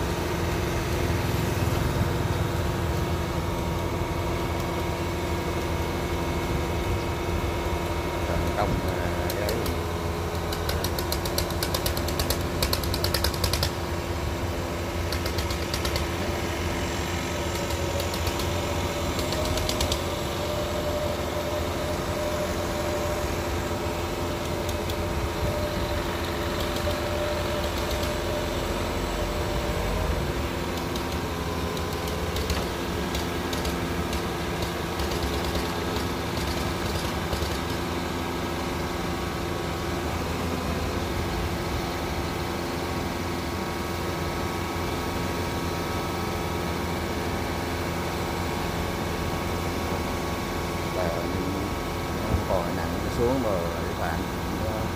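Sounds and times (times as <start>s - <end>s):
diesel engine running: 0.0s - 54.9s
rapid metallic clattering: 30.7s - 37.9s.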